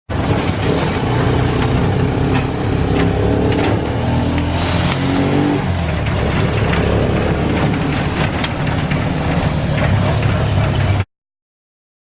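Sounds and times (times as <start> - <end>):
van engine revving: 0.1 - 11.0
sharp clicks or rattles: 5.9 - 11.0.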